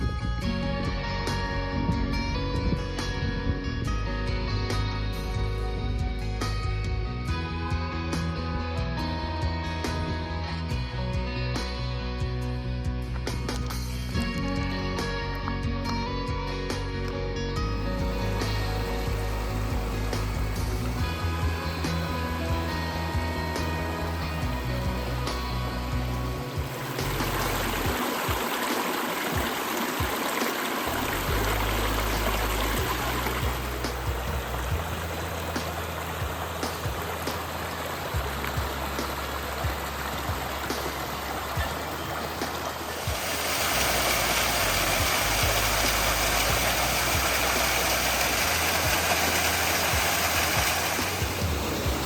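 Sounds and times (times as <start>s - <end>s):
background music: 0.0s - 52.0s
mountain stream rushing: 17.8s - 52.0s.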